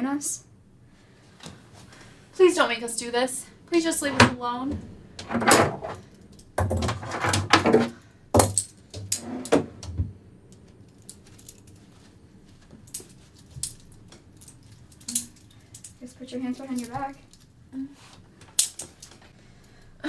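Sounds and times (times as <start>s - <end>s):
metal handcuffs jangling: 8.4s - 8.8s, 12.8s - 16.0s, 18.6s - 19.2s.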